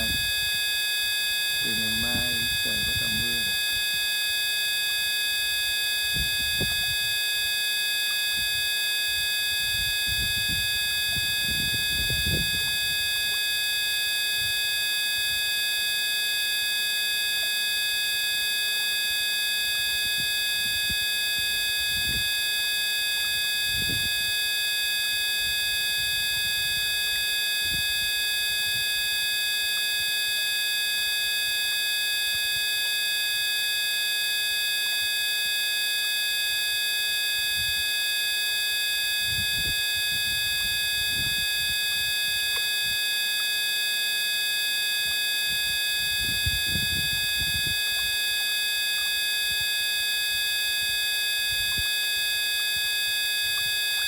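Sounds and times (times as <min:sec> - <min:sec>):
steady electronic buzz: 0:00.0 - 0:29.6.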